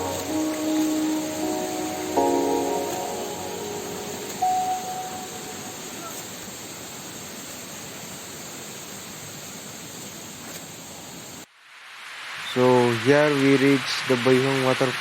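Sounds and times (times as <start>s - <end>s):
background music note: 0.0s - 6.4s
waterfall roaring: 0.0s - 15.0s.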